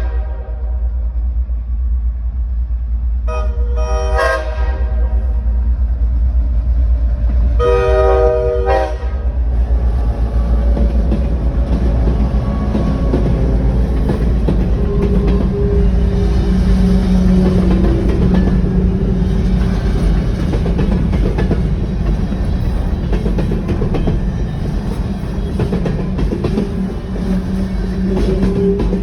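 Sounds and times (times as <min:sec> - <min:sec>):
train horn blasts: 0:00.0 - 0:01.0, 0:03.3 - 0:05.4, 0:07.6 - 0:09.4
low rumble: 0:00.0 - 0:03.9, 0:04.5 - 0:23.1
train cars clattering over rails: 0:09.6 - 0:29.0.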